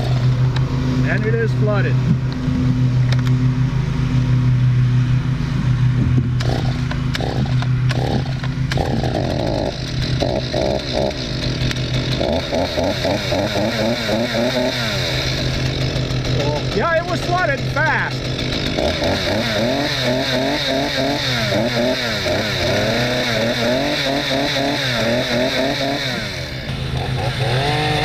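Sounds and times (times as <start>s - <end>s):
chainsaw engine revving: 0.0s - 28.0s.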